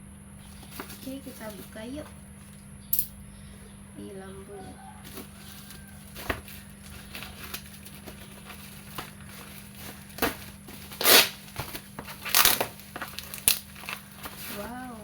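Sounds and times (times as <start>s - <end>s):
package crinkling by hand: 5.1s - 15.0s
package tearing open: 7.0s - 14.6s.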